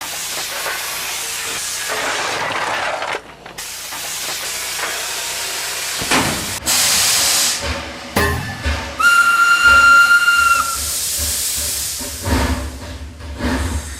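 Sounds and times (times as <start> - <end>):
steam locomotive hissing: 3.6 - 13.9
loud steam blast: 5.4 - 7.8, 9.0 - 13.9.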